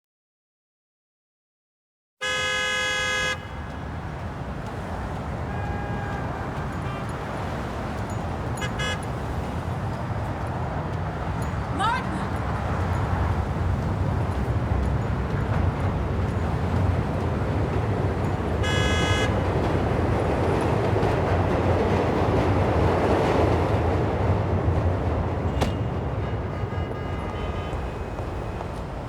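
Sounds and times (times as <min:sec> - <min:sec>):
car horn toot: 0:02.2 - 0:04.2, 0:04.8 - 0:09.6, 0:18.5 - 0:19.6, 0:25.5 - 0:28.8
low engine rumble of traffic: 0:02.2 - 0:29.0
vehicle passing: 0:02.8 - 0:29.0.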